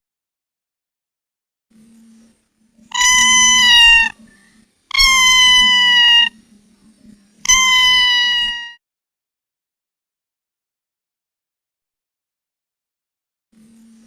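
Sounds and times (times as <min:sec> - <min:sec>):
cat meowing: 0:02.9 - 0:04.2, 0:04.9 - 0:06.4, 0:07.4 - 0:08.8.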